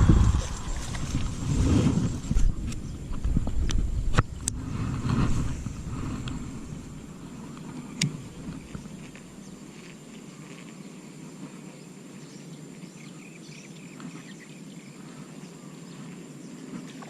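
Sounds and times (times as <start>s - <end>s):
low background rumble: 0.0s - 9.9s
insects droning: 0.0s - 17.0s
faint scattered ticks: 5.5s - 17.0s.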